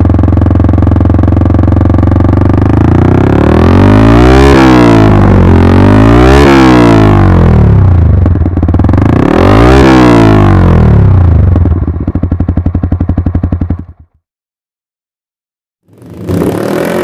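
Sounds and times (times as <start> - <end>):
motorcycle engine revving: 0.0 - 14.2, 15.9 - 17.0.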